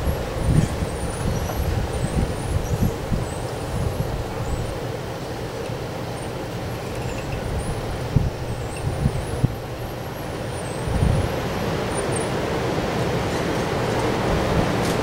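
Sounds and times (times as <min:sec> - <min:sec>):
wind buffeting microphone: 0:00.0 - 0:04.9, 0:06.7 - 0:09.8, 0:10.8 - 0:11.9, 0:12.5 - 0:15.0
strong wind blowing: 0:00.0 - 0:05.0, 0:07.3 - 0:09.8, 0:10.8 - 0:15.0.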